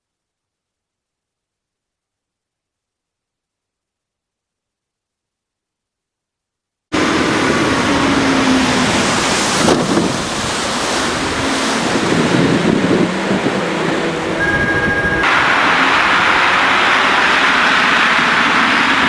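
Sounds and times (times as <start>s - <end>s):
rushing water: 6.9s - 19.0s
wind on microphone: 8.5s - 15.3s.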